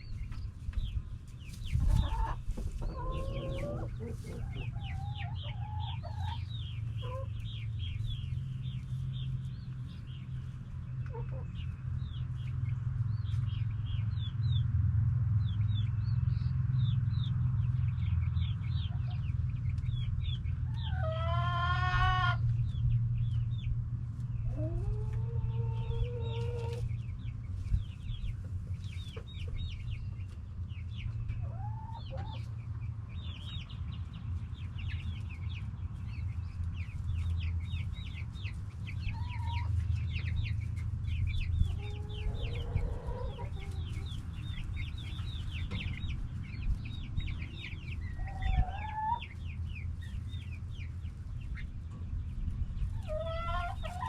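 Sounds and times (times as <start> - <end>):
chickens clucking and calling: 0.0 - 54.0.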